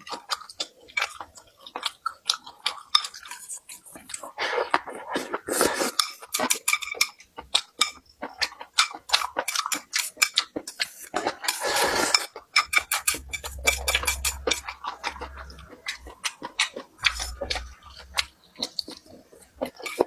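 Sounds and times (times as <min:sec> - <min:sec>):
chewing: 0:00.0 - 0:20.0
utensils clicking against dishes: 0:05.7 - 0:08.0, 0:08.8 - 0:15.6, 0:19.5 - 0:20.0
low hum: 0:12.7 - 0:18.4.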